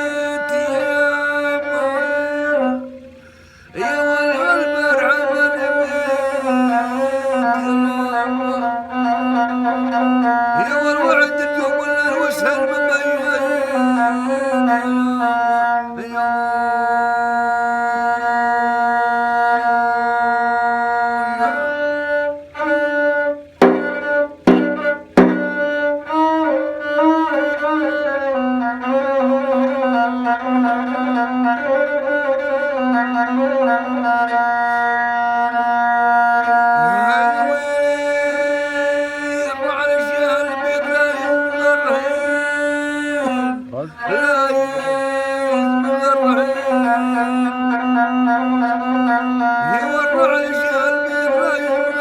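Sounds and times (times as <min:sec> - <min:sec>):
bowed spike fiddle solo: 0:23.6 - 0:26.6.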